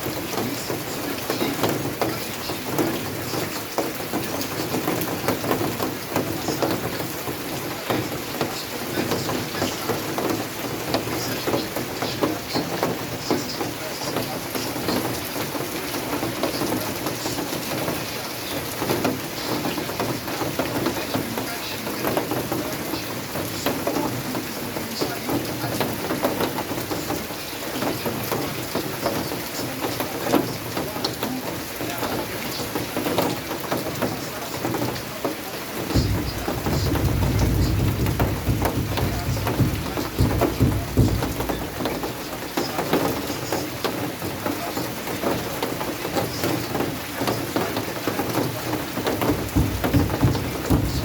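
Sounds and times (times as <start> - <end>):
rain pattering: 0.0 - 51.0.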